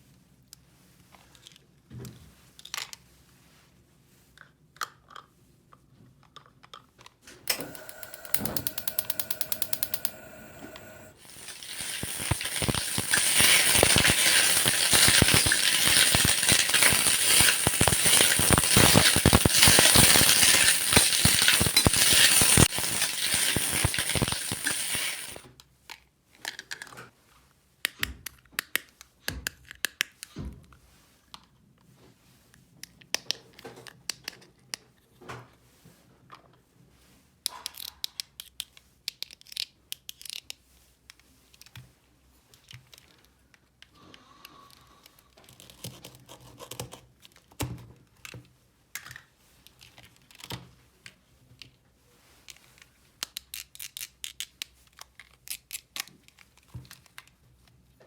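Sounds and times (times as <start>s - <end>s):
loud crackling noise: 7.5s - 25.4s
rapid ratcheting click: 7.5s - 25.4s
plastic toy pieces clicking: 10.8s - 25.4s.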